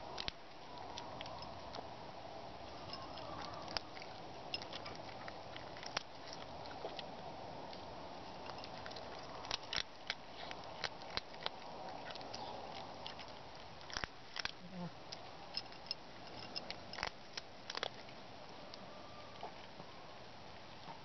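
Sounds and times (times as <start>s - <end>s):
cat crunching food: 0.0s - 18.8s.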